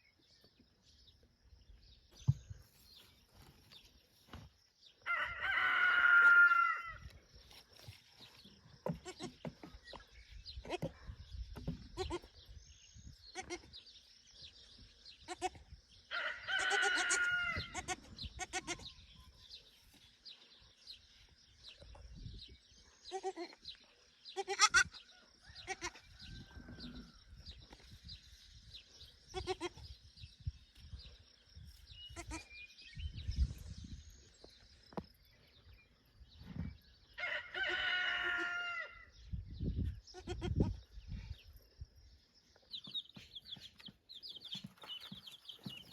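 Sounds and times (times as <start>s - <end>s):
rooster crowing: 5.0s - 7.0s, 16.1s - 17.7s, 37.2s - 39.1s.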